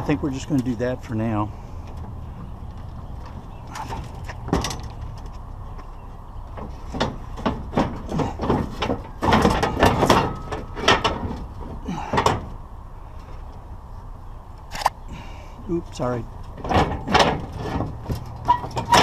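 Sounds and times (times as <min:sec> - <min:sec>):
objects knocking and clattering: 0:06.5 - 0:12.5, 0:16.6 - 0:19.0.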